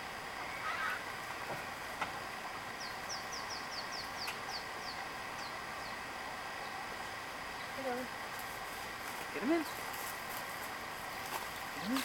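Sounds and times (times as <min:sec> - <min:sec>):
outdoor background hiss: 0:00.0 - 0:12.0
bird chirping: 0:02.7 - 0:06.8.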